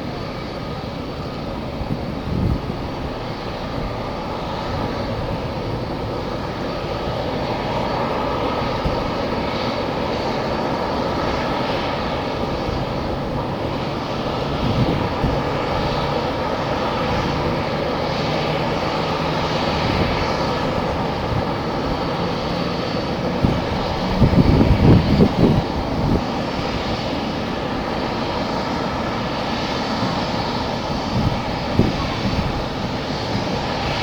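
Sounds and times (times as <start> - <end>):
jet engines whining: 0.0 - 34.0
wind buffeting microphone: 0.0 - 34.0.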